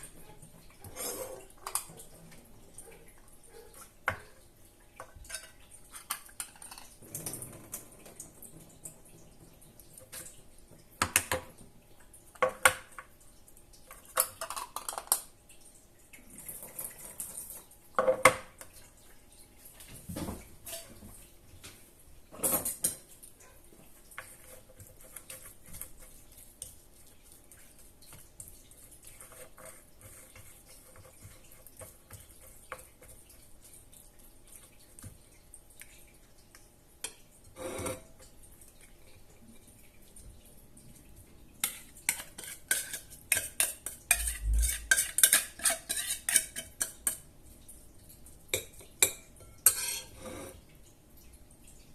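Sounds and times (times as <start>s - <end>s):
dishes and cutlery clinking: 5.0s - 8.7s, 20.2s - 21.0s, 22.3s - 23.1s, 41.6s - 47.3s, 48.5s - 50.6s.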